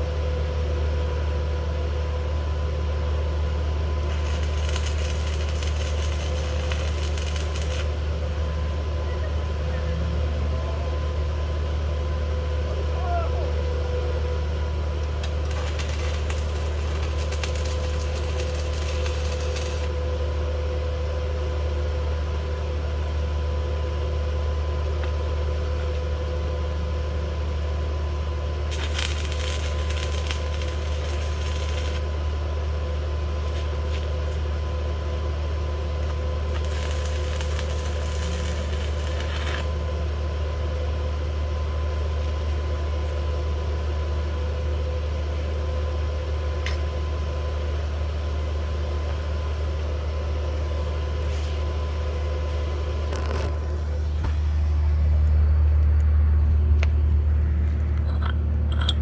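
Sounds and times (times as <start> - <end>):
low electrical hum with whine: 0.0 - 59.0
hissing crackle: 4.0 - 8.0, 15.2 - 19.9, 28.7 - 32.2, 36.0 - 39.8.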